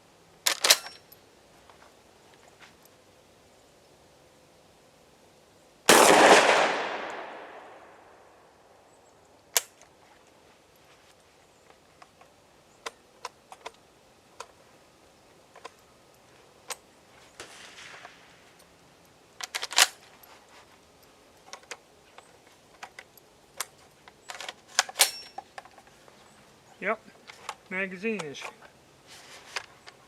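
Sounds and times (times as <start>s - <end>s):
shotgun shot echoing: 5.9s - 8.2s.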